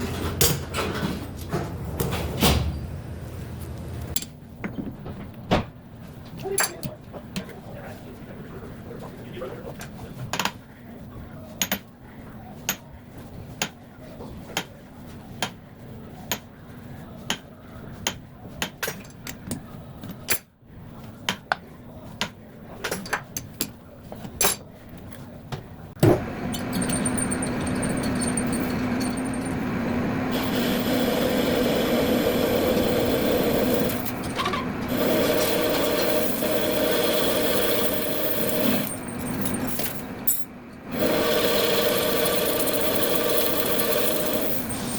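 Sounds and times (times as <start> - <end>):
metal lathe running: 26.3 - 44.9.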